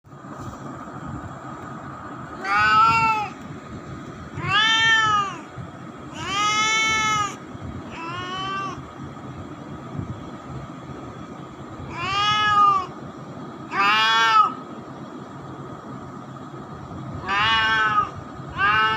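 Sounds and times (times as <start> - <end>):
cat meowing: 2.4 - 3.3, 4.4 - 5.4, 6.2 - 8.8, 11.9 - 12.9, 13.7 - 14.5, 17.2 - 18.9.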